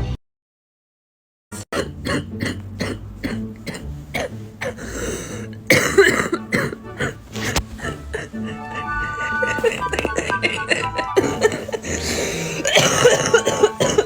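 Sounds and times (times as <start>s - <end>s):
woman coughing wetly: 1.8s - 8.5s, 9.4s - 14.0s.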